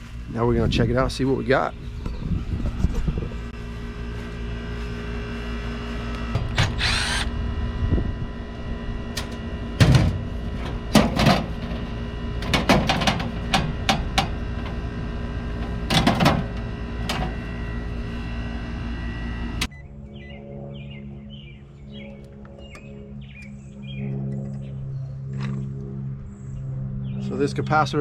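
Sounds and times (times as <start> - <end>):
tools and metal panels handled: 9.2 - 14.8, 15.6 - 17.4.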